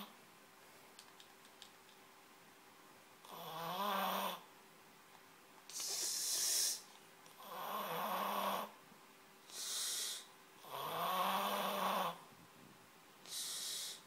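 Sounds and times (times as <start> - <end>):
person snoring: 9.5 - 12.2.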